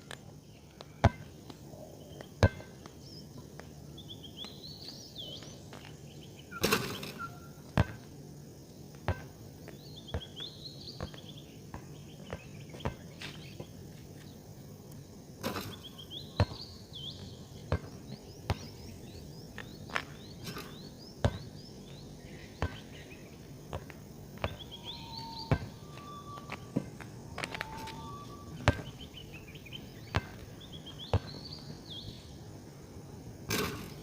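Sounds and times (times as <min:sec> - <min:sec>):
songbird warbling: 0:24.4 - 0:31.7.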